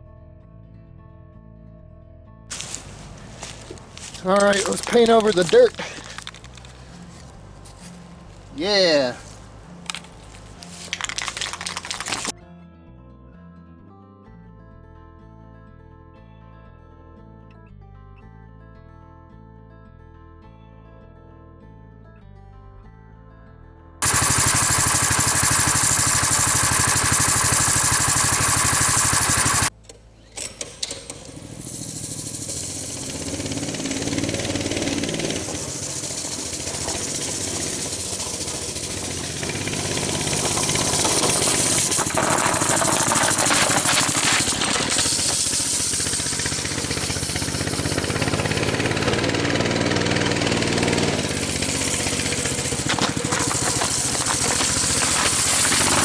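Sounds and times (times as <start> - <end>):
small engine revving: 2.5 - 12.3, 24.0 - 56.0.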